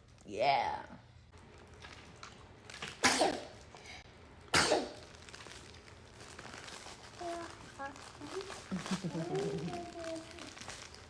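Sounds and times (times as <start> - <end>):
small child sneezing: 3.0 - 3.5, 4.6 - 5.0.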